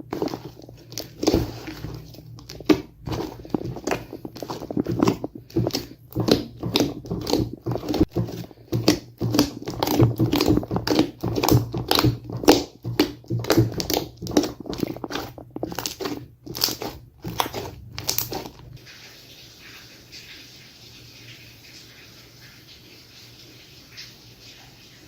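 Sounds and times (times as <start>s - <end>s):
slime squishing and popping: 0.0s - 18.8s.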